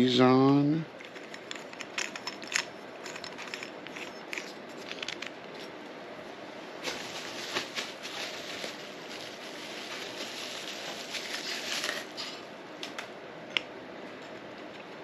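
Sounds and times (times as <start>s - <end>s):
metal pipes scraping and rustling: 1.0s - 5.7s.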